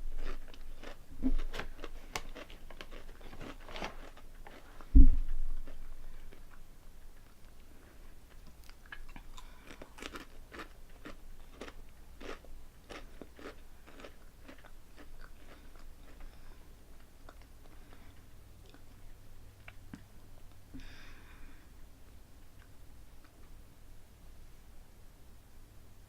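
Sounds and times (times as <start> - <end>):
crunching and chewing chips: 0.0 - 20.6.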